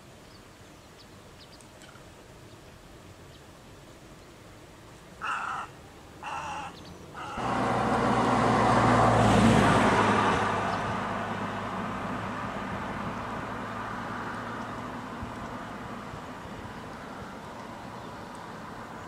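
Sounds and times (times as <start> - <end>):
harsh bird calls: 5.2 - 7.5
motor vehicle passing: 7.2 - 19.0.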